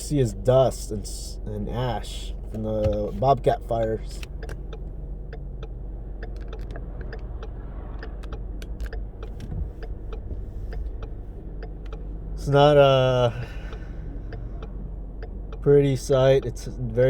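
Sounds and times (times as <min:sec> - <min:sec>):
car road noise rumble: 0:00.0 - 0:17.0
faint ticks: 0:04.2 - 0:12.1.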